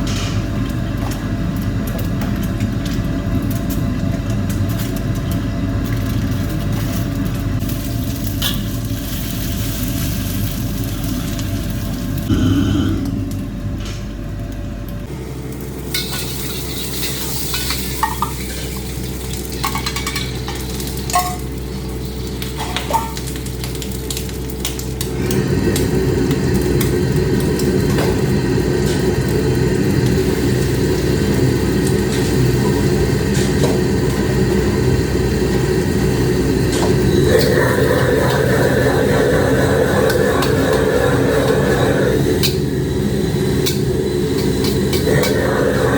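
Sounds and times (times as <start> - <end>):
food sizzling in a wok: 6.7 - 12.3, 15.2 - 38.8.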